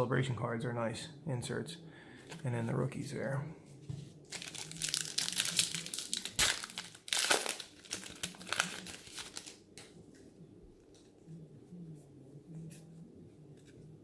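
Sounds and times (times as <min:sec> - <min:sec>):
foil wrapper crinkling and tearing: 0:04.3 - 0:09.6.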